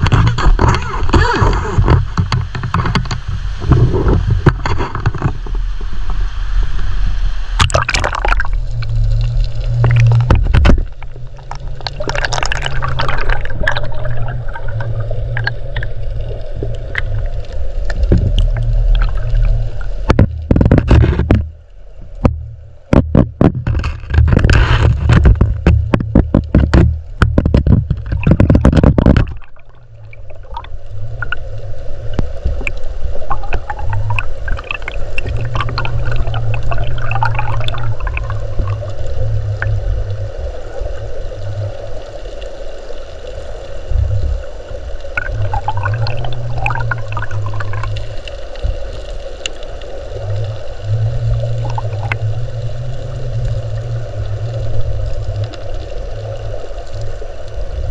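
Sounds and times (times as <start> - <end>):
sharp underwater knocks: 0.0 - 5.6, 7.6 - 8.6, 9.8 - 14.3, 17.9 - 19.3, 20.0 - 21.6, 22.2 - 31.4, 32.2 - 38.8
underwater rushing river current: 0.0 - 57.9
water gurgling: 0.0 - 57.9.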